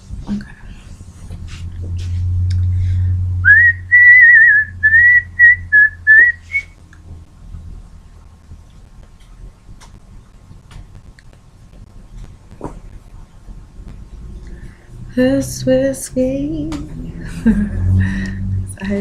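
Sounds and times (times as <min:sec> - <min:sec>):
low steady hum: 0:00.0 - 0:19.0
person whistling a tune: 0:03.4 - 0:06.7.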